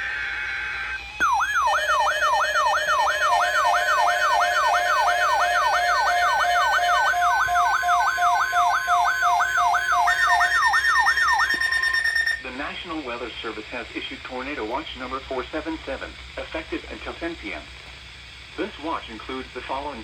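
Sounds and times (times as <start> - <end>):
siren-like warble alert: 0.0 - 12.5
steady beeping tones: 1.1 - 12.5.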